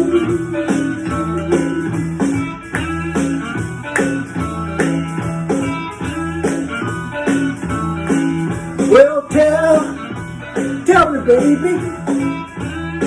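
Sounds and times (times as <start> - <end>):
repeating guitar riff: 0.0 - 8.6
blues band playing: 0.0 - 13.0.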